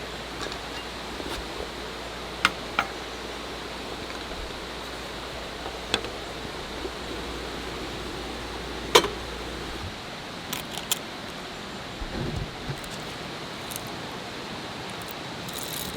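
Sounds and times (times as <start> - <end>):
steady hiss: 0.0 - 15.9
small hard objects clicking: 14.9 - 15.9.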